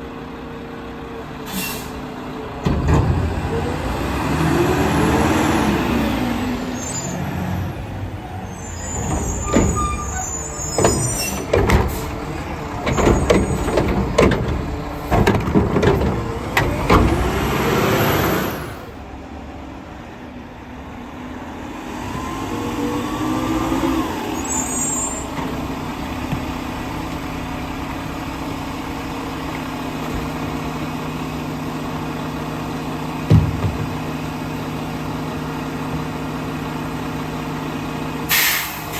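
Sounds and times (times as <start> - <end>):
diesel engine under load: 0.0 - 38.9
metal clanks and bangs: 8.8 - 17.3, 33.3 - 34.3.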